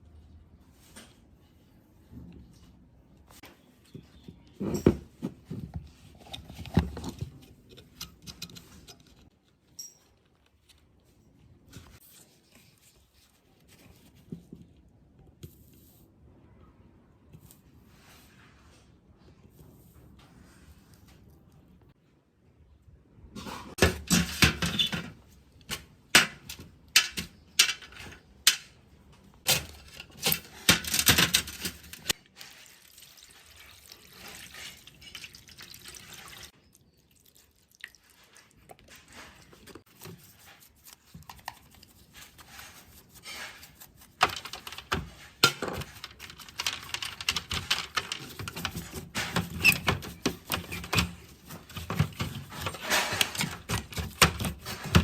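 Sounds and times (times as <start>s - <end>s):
clicks and knocks of tools: 7.1s - 10.6s.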